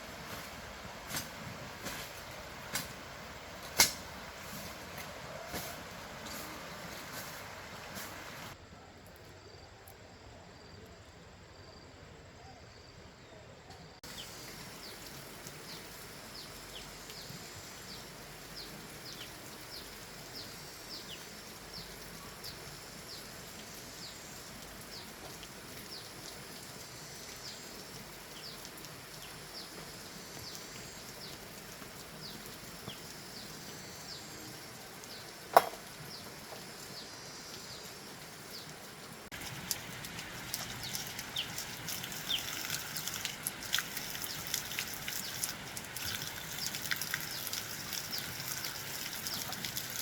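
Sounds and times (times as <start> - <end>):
steady hiss: 0.0 - 8.6, 14.0 - 43.3.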